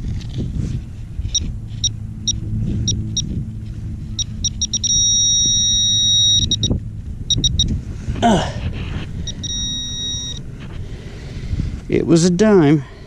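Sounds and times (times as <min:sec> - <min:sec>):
low steady rumble: 0:00.0 - 0:13.0
pinpointer beeping: 0:01.3 - 0:03.3, 0:04.2 - 0:07.7, 0:09.2 - 0:10.4
scraping rustle: 0:08.0 - 0:09.3.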